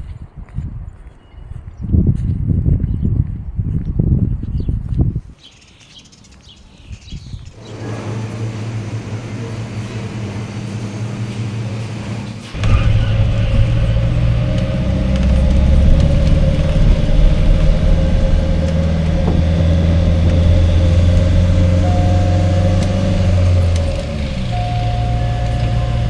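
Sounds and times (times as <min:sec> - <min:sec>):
car engine humming: 0:07.6 - 0:26.0.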